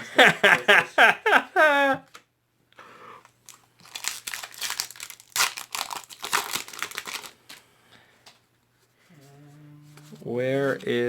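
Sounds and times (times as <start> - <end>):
foil wrapper crinkling: 3.4 - 7.6.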